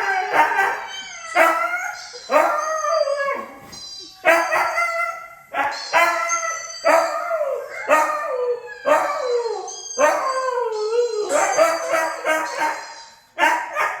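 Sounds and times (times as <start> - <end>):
husky howling: 6.0 - 12.8.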